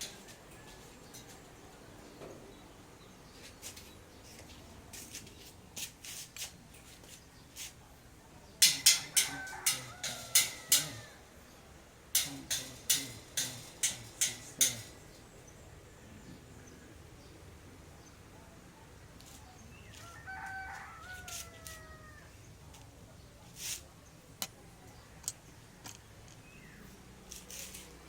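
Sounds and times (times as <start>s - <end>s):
hammer strikes: 8.6s - 11.3s, 12.2s - 15.0s.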